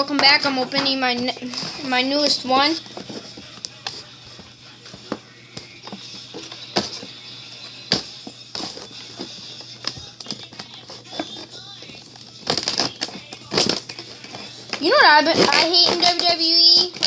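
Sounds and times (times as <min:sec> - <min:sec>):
packaging being opened by hand: 0:07.9 - 0:17.0.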